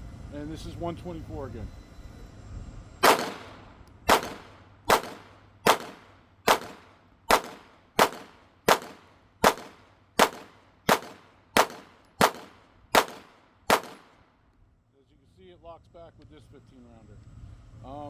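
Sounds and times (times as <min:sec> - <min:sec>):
pistol shots ringing: 0:03.0 - 0:14.2.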